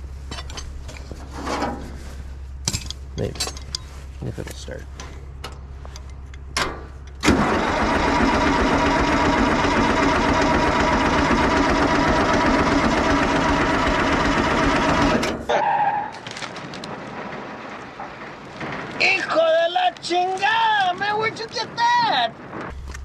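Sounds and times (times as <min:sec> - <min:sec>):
diesel engine running: 0:02.0 - 0:15.5.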